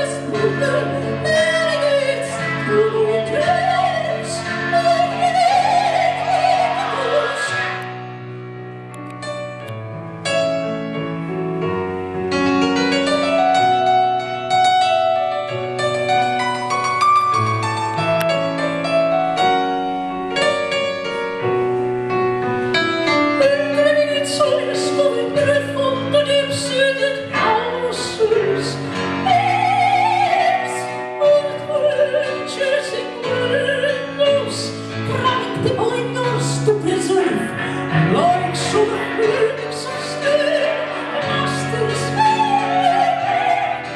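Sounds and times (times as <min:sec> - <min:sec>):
operatic singing voice: 0:00.0 - 0:07.9, 0:23.4 - 0:43.9
piano playing: 0:00.0 - 0:43.9.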